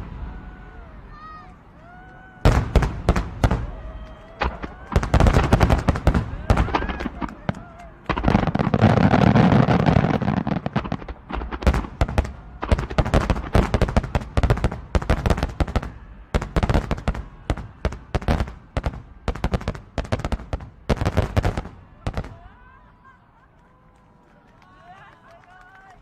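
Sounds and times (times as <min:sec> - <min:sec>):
fireworks bursting with crackling bangs: 0:00.0 - 0:22.8.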